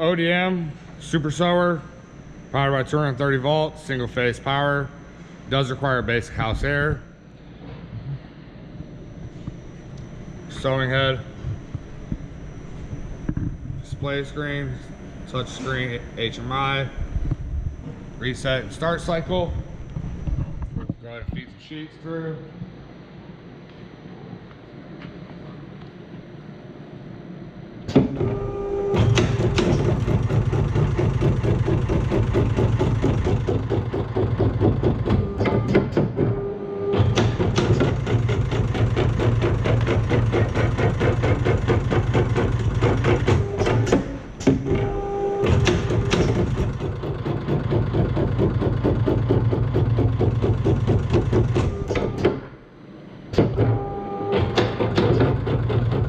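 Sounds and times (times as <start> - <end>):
machine hum: 0.0 - 56.0
machine clack: 27.9 - 52.5, 53.4 - 56.0
rapid mechanical clatter: 27.9 - 52.5, 53.3 - 56.0.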